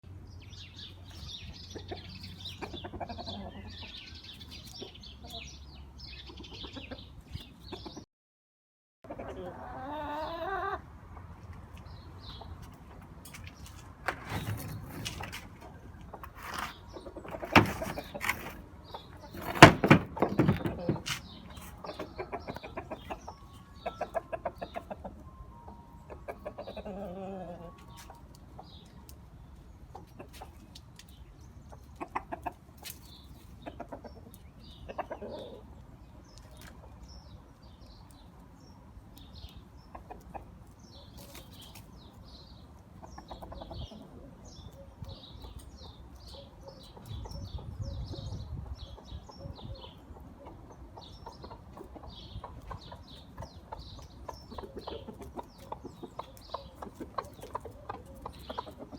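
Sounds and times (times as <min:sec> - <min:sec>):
sharp thumps and rustles: 0:13.3 - 0:18.6, 0:19.3 - 0:21.7
hen clucking softly: 0:46.3 - 0:58.9.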